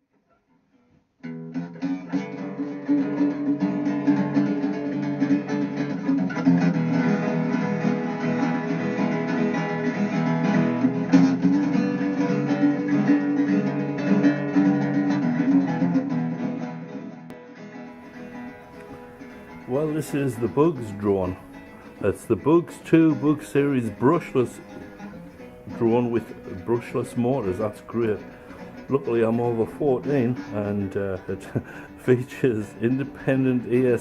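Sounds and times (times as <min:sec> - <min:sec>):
strummed acoustic guitar: 0:01.2 - 0:34.0.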